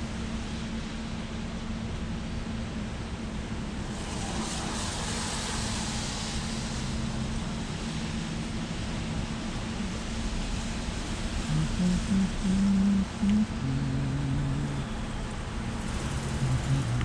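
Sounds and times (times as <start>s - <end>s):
steady low hum: 5.4s - 17.0s
vehicle passing: 13.5s - 17.0s.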